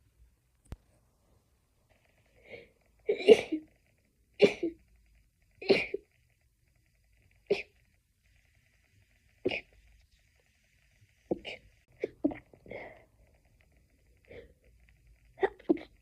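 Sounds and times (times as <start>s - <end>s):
person sneezing stifled: 9.5s - 9.7s.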